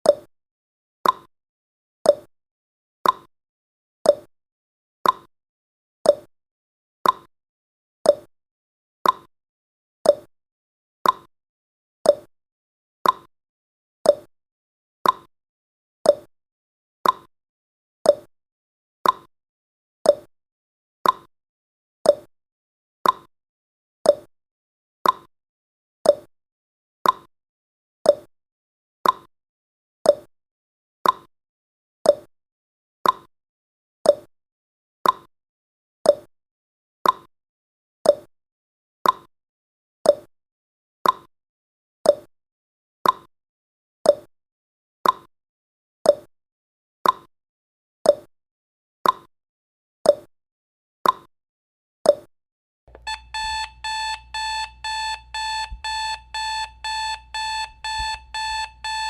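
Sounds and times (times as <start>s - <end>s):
beeping alarm: 52.9s - 59.0s
clock ticking: 52.9s - 59.0s.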